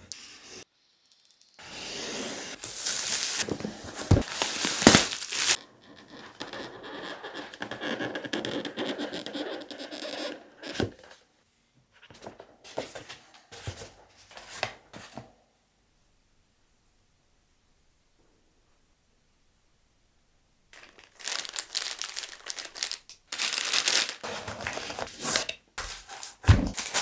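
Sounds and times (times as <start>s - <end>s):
cardboard scraping and rustling: 1.7s - 5.6s, 21.0s - 27.0s.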